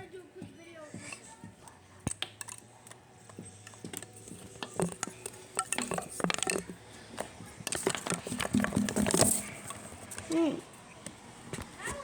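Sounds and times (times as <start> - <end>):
small hard objects clinking: 0.9 - 10.6.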